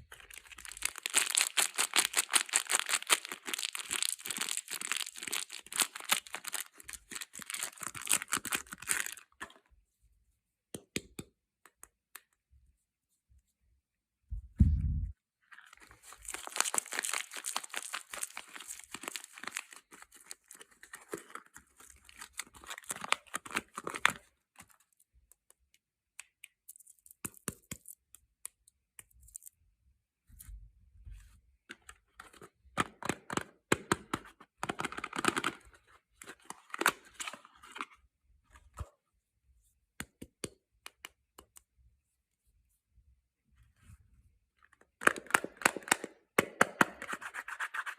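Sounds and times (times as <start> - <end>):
packaging crackling and rustling: 0.1 - 9.4, 15.6 - 24.2.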